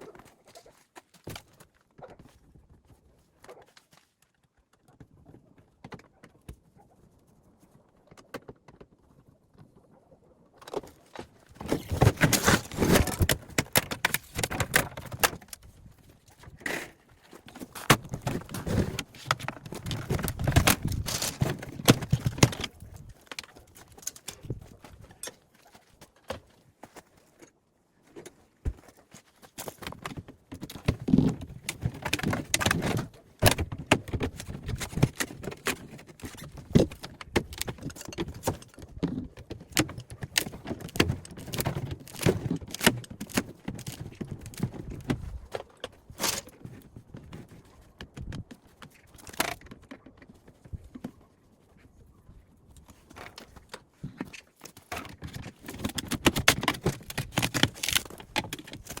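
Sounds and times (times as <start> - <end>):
metal parts clicking and rattling: 11.6 - 15.6, 17.5 - 25.5, 29.6 - 44.8, 52.9 - 59.0.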